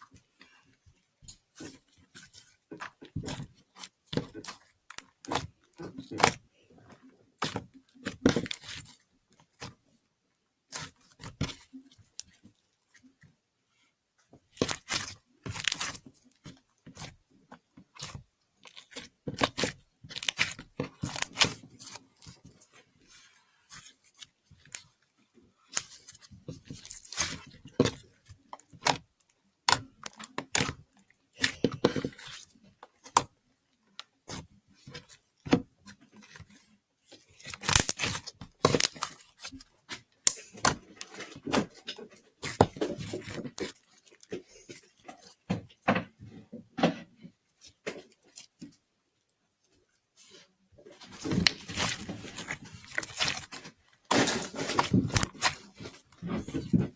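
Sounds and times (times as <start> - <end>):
slime clicking and popping: 25.8 - 32.4, 37.3 - 39.6.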